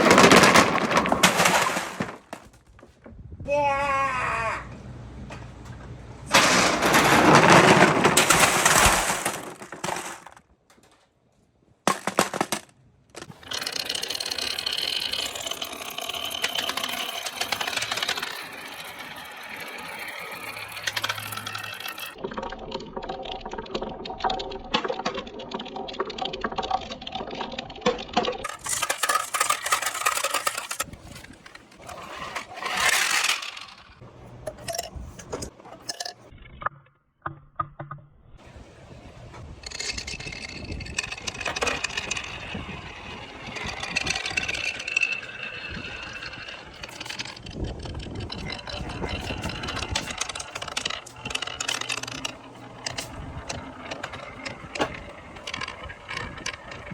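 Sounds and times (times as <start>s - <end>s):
balls clicking on wood: 0.0s - 2.9s, 6.3s - 11.0s, 11.9s - 36.3s, 37.3s - 56.9s
balls rolling down marble run: 0.0s - 2.9s, 5.7s - 10.9s, 11.9s - 56.9s.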